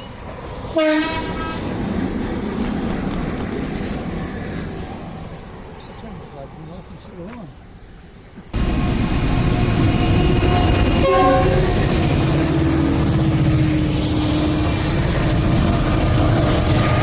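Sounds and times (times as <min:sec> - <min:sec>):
train rumbling: 0:00.0 - 0:17.0
train horn: 0:00.8 - 0:01.7, 0:09.7 - 0:15.0.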